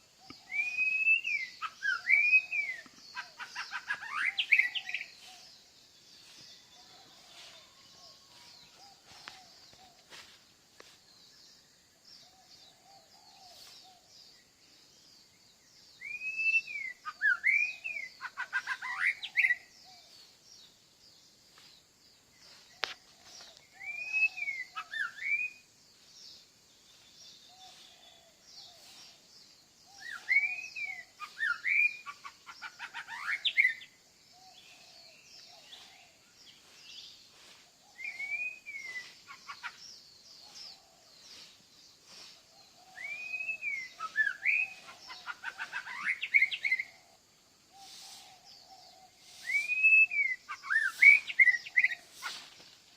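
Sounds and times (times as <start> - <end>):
bird whistling sweeping phrase: 49.3 - 52.3.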